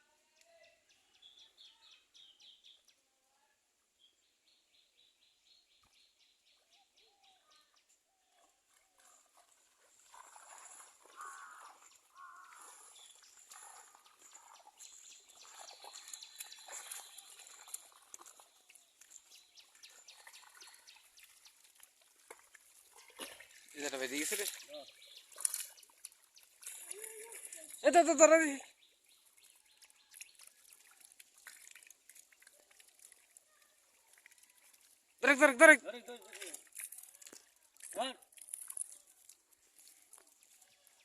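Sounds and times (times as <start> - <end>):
birds chirping: 11.0 - 21.8, 23.6 - 30.5.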